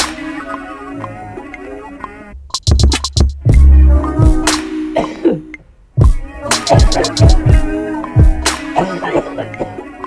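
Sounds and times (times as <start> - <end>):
deep kick drum: 2.3 - 4.5, 6.0 - 8.4
sustained synth notes: 2.3 - 4.5
sharp snare hit: 4.4 - 4.7.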